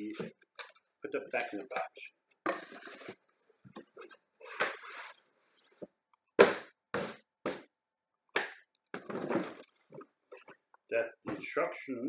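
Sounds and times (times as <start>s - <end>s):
cardboard packaging rustling: 2.5s - 5.8s, 8.9s - 10.5s.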